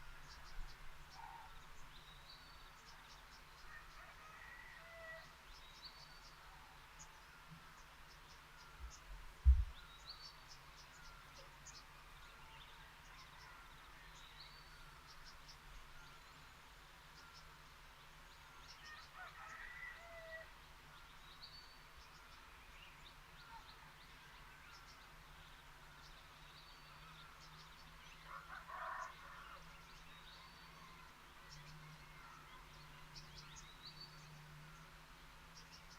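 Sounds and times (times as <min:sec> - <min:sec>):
low thump: 0:09.4 - 0:09.8.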